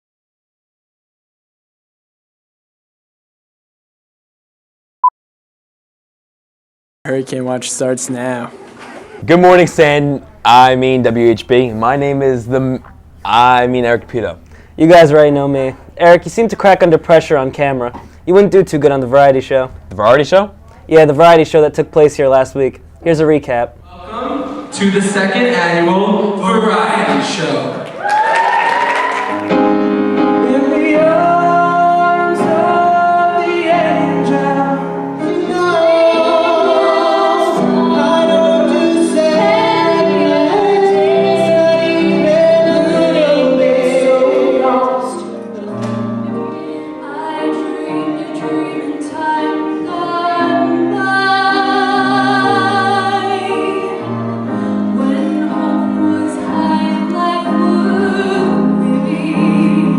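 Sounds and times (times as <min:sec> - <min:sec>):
woman singing with vibrato: 0:23.8 - 0:24.7, 0:30.4 - 0:59.9
instrumental accompaniment: 0:29.3 - 0:59.9.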